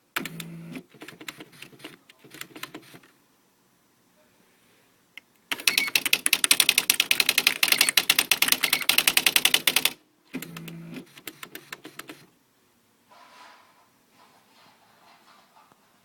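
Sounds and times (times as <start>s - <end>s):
typewriter strikes: 5.5s - 10.0s.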